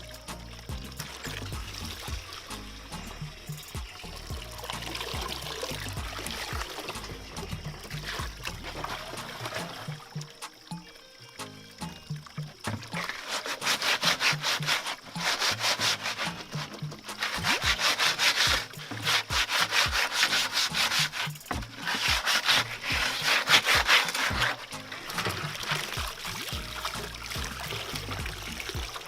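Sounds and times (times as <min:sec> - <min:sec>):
scrubbing plastic can: 0:04.2 - 0:10.4, 0:12.4 - 0:29.0.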